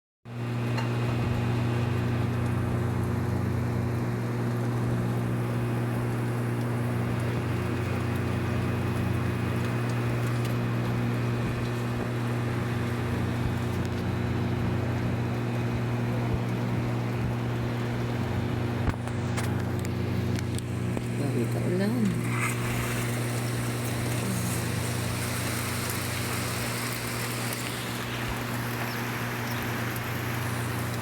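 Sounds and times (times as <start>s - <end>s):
low mechanical hum with tones: 0.3s - 31.0s
steady hiss: 20.7s - 31.0s.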